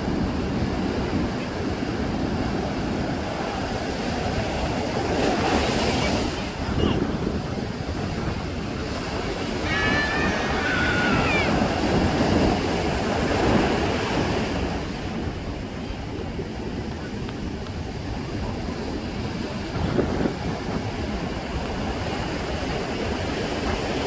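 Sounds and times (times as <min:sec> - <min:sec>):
sea waves breaking on shore: 0:00.0 - 0:24.0
high-pitched calls: 0:09.6 - 0:11.6.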